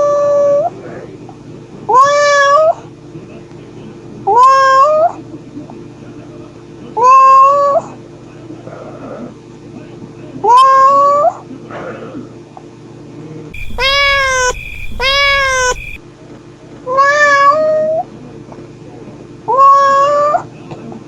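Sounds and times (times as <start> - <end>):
cat meowing: 13.6 - 16.0.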